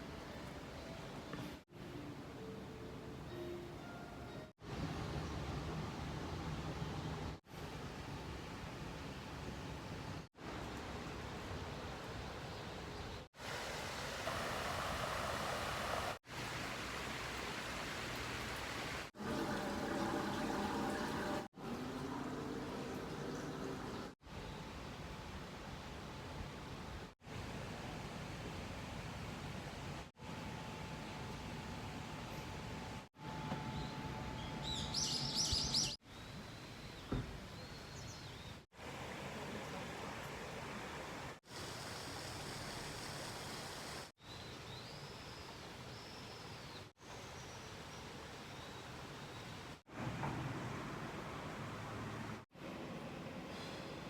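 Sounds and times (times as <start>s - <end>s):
outdoor hiss: 13.0s - 21.7s, 34.7s - 54.0s
water rushing: 13.4s - 24.2s.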